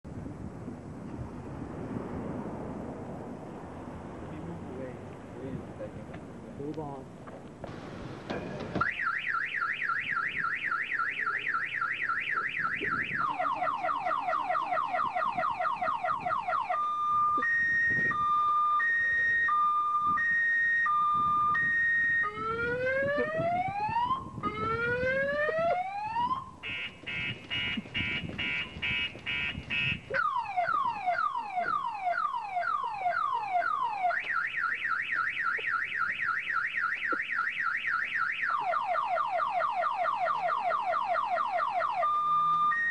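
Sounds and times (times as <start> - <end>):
car alarm siren tones: 8.8 - 42.9.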